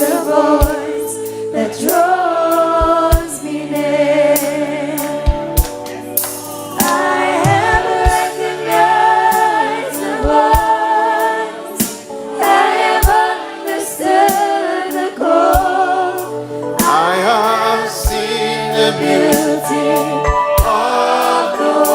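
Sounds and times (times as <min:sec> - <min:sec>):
women singing gospel together: 0:00.0 - 0:05.6, 0:06.4 - 0:21.9
band accompaniment: 0:00.0 - 0:21.9
drum hits: 0:06.8 - 0:08.3.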